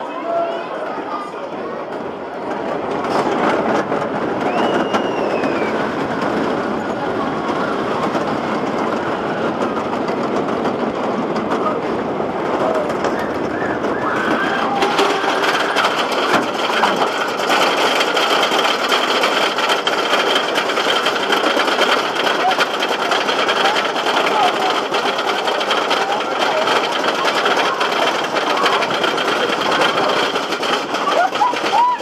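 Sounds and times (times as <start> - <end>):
roller coaster rumbling clatter: 0.0 - 32.0
high squeal: 4.5 - 5.9.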